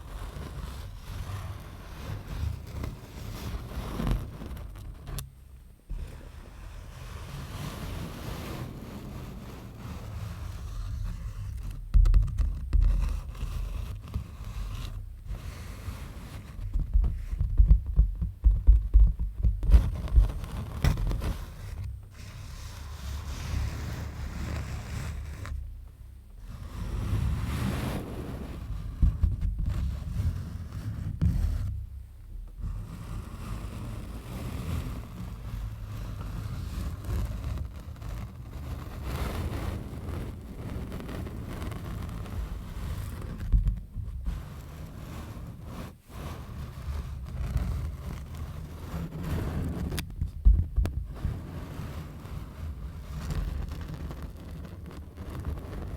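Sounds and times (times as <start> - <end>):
scraping and rustling on object: 0.0 - 55.9
low handling thumps: 16.4 - 22.2, 28.8 - 30.2, 50.0 - 51.4.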